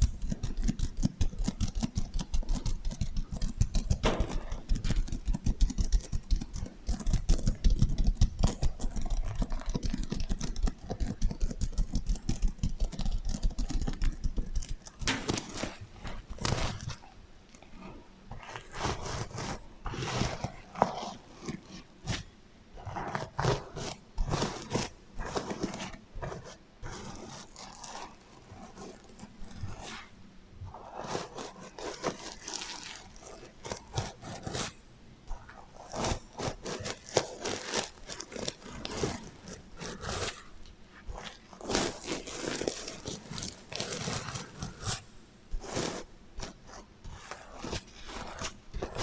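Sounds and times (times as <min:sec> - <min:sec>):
sequins scraping and rustling: 0:22.9 - 0:49.0.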